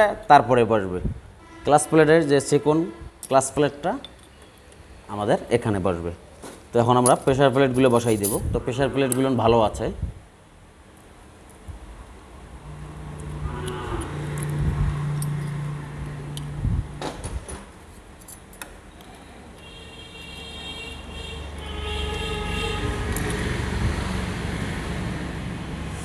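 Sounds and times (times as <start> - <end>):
road traffic hum: 1.0 - 26.0
metal clutch plates clinking: 7.0 - 8.5, 17.5 - 18.8.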